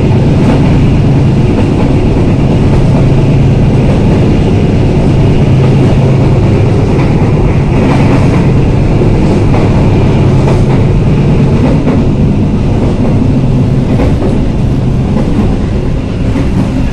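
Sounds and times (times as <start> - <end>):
train rumbling on track: 0.0 - 16.9
wheels clicking over rails: 0.0 - 16.9.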